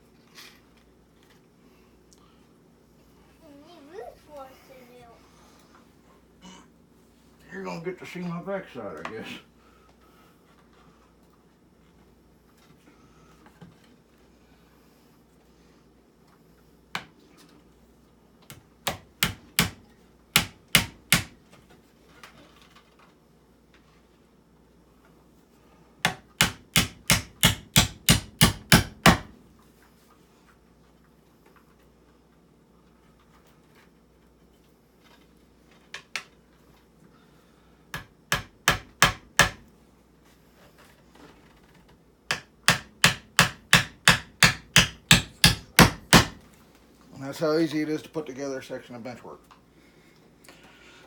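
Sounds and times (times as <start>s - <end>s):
hammer striking nails into wood: 18.8s - 21.4s, 26.0s - 29.3s, 38.0s - 39.6s, 42.3s - 46.4s.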